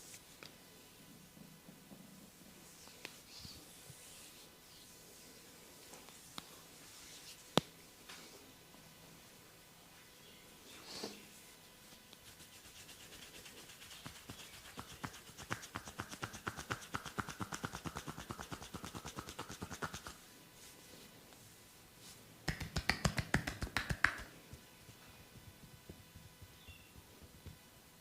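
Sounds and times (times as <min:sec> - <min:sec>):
hands striking in percussive massage: 0:12.9 - 0:20.2, 0:22.5 - 0:24.3.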